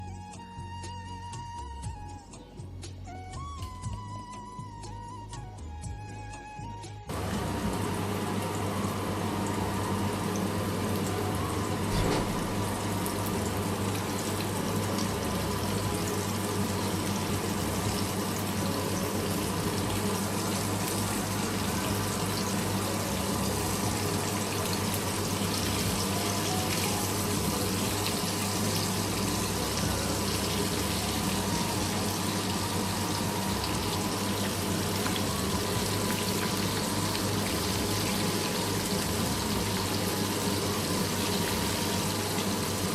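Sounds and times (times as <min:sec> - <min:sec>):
water running from tap: 0:07.1 - 0:42.9.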